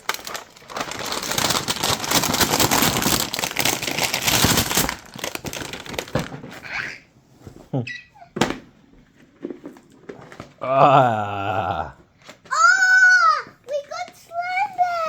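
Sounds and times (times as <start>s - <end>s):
packaging crinkling: 0.0s - 6.8s.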